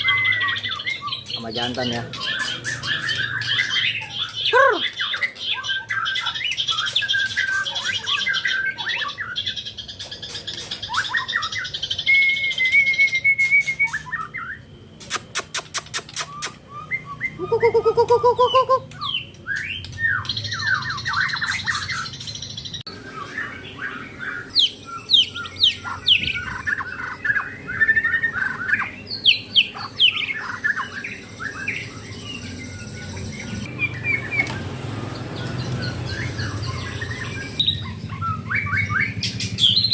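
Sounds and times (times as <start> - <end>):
songbird singing: 0.0 - 39.9
sharp bird clicks: 15.0 - 16.7.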